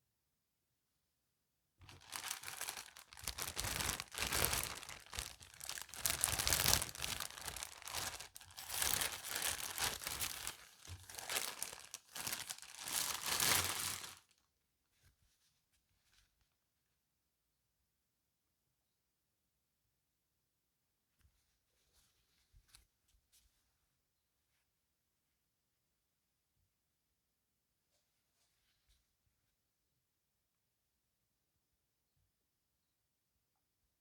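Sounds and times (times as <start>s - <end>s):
packaging crinkling and rustling: 1.8s - 14.3s.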